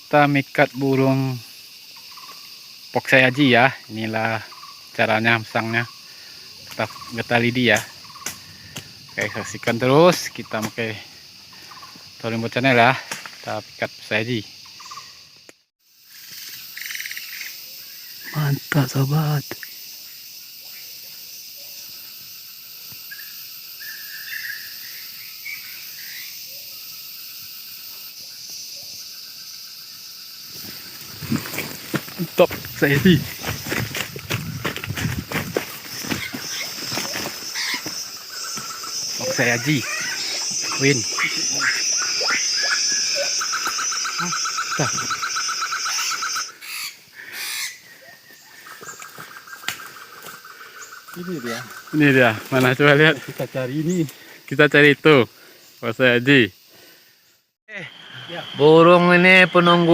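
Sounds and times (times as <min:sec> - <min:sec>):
insects chorus: 0:00.0 - 0:59.9.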